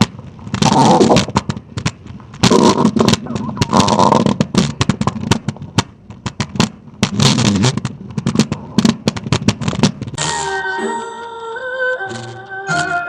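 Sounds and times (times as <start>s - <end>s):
cartoon stomach growling: 0.6s - 1.6s, 2.4s - 5.5s, 7.1s - 7.8s.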